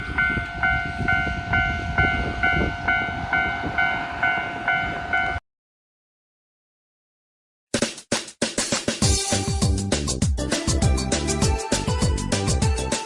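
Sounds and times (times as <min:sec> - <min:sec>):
level crossing warning bell: 0:00.0 - 0:05.4
low rumble: 0:00.0 - 0:05.4.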